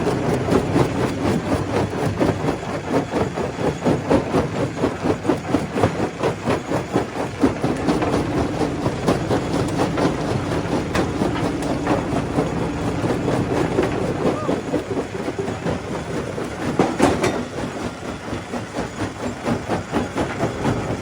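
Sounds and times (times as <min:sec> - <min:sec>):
stone crusher drive humming: 0:00.0 - 0:03.3, 0:06.8 - 0:18.5.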